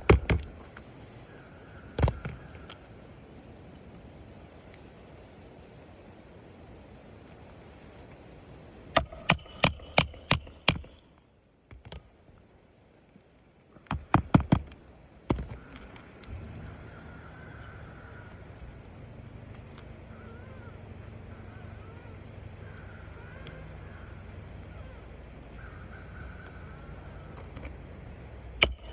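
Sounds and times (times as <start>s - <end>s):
hammer striking nails: 9.0s - 11.1s, 13.9s - 14.7s, 28.6s - 28.9s.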